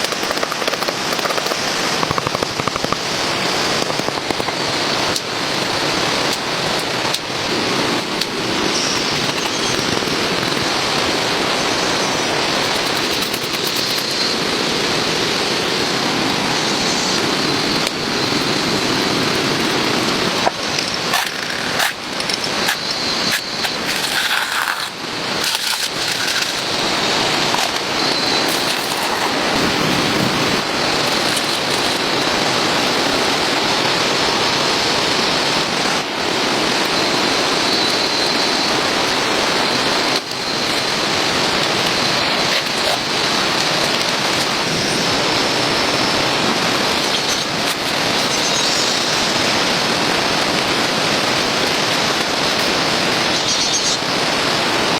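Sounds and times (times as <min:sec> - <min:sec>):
clicks and taps: 0:00.0 - 0:03.1
steady hissing noise: 0:00.0 - 0:54.9.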